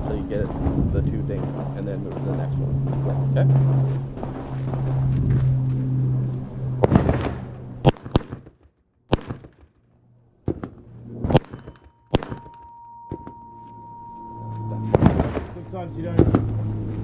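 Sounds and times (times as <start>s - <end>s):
gunshots: 0.0s - 5.1s, 6.8s - 9.8s, 10.4s - 12.7s, 14.9s - 15.6s
steady ringing tone: 0.0s - 7.9s, 10.9s - 17.0s.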